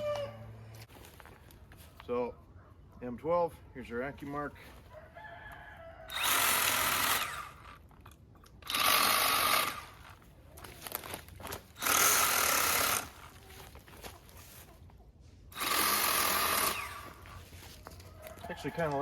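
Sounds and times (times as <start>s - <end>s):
cordless pruning saw cutting wood: 6.1s - 7.8s, 8.6s - 10.2s, 11.8s - 13.3s, 15.5s - 17.4s.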